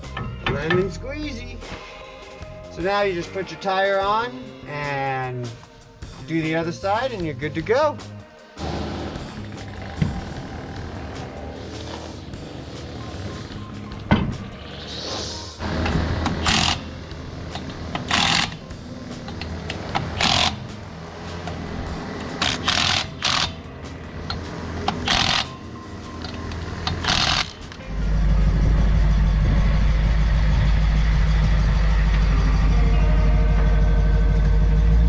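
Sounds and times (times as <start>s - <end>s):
vehicle engine running: 8.6s - 14.7s, 15.6s - 35.0s
impact wrench bursts: 15.8s - 16.9s, 17.6s - 18.6s, 20.0s - 20.7s, 22.2s - 23.6s, 24.3s - 25.6s, 26.9s - 27.7s.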